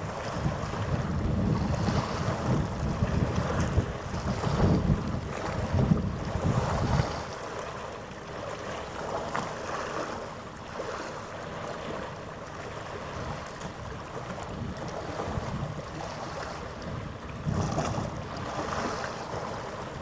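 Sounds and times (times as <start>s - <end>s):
wind buffeting microphone: 0.0s - 7.6s, 11.6s - 20.0s.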